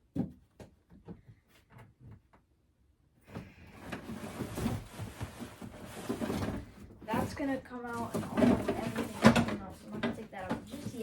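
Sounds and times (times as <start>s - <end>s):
cardboard and packaging rustling: 3.3s - 11.0s.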